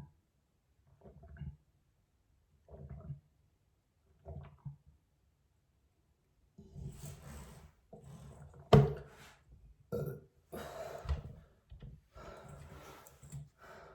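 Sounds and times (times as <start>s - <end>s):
person burping: 9.9s - 10.7s.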